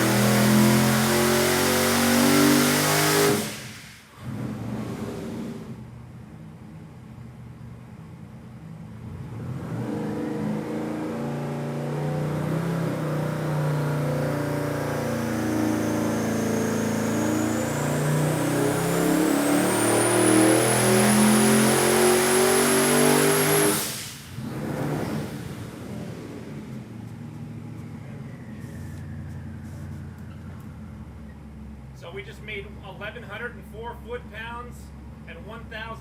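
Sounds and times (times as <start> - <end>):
engine revving at full throttle: 0.0 - 5.8, 9.0 - 26.8
turbo whine: 12.3 - 25.3.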